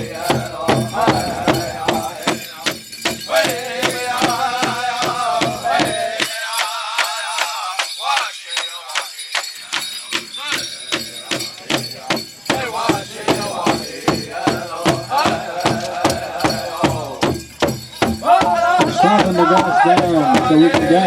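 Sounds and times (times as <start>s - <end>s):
big drum beating: 0.0s - 6.2s, 10.6s - 21.0s
group of singers singing: 0.0s - 21.0s.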